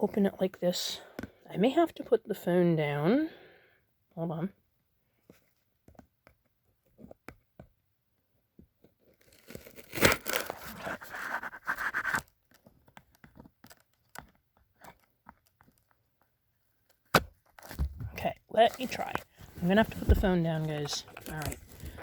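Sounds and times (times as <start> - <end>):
package tearing: 9.2 - 12.3.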